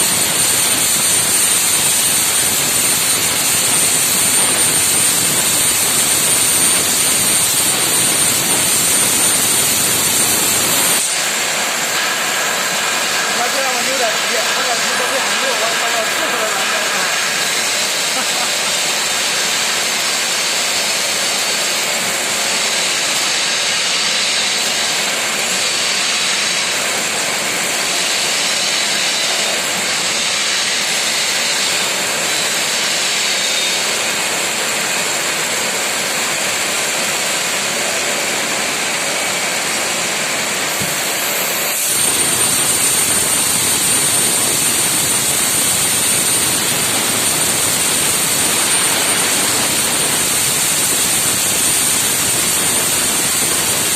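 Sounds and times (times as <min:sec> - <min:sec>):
high whine: 0:00.0 - 0:20.1, 0:38.8 - 0:53.9
cutting torch hissing: 0:00.0 - 0:53.9.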